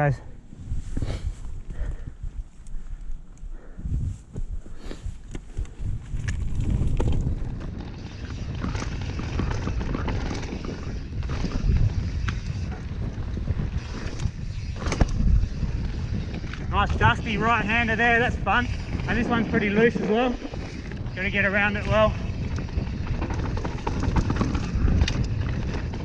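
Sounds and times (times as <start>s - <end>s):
wind buffeting microphone: 0.0s - 26.0s
tyres rumbling on loose dirt: 4.8s - 26.0s
bike clicks and knocks: 5.3s - 15.3s.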